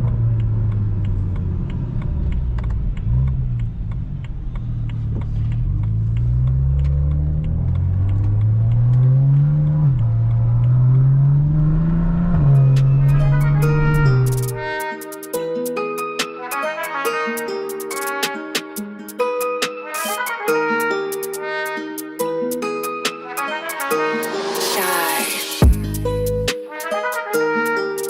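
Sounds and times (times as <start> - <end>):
car engine accelerating: 0.0 - 14.7.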